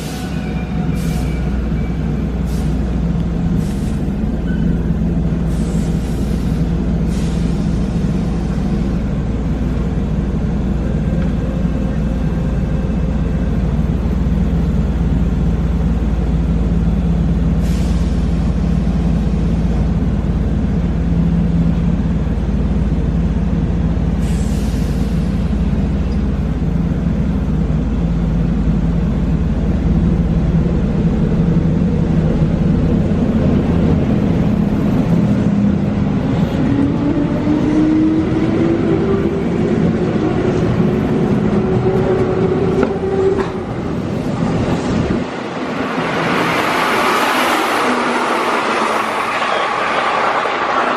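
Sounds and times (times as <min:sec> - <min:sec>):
electric train humming: 0:25.2 - 0:50.9.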